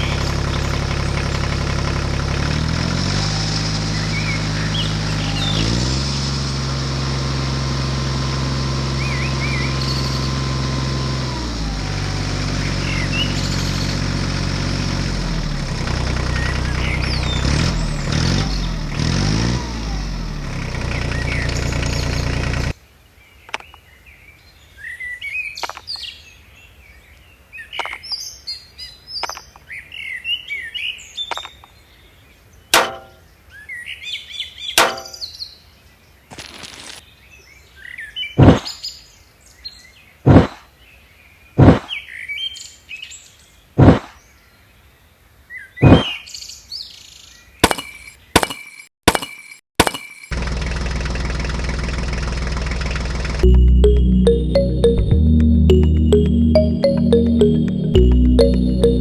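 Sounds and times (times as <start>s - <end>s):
tractor engine revving: 0.0s - 22.7s
sharp taps: 32.8s - 33.2s, 34.8s - 35.2s, 47.6s - 50.3s.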